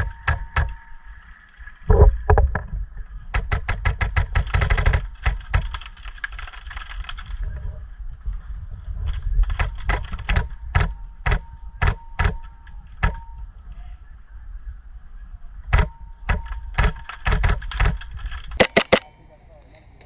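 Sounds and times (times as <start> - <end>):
airsoft gun shots: 18.6 - 19.1.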